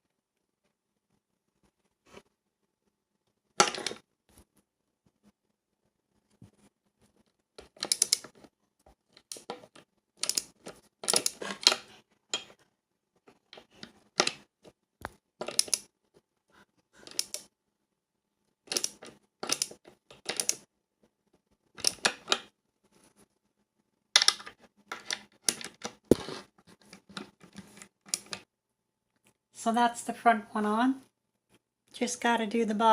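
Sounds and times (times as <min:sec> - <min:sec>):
skate tool clicking and scraping: 0:24.2 - 0:28.4.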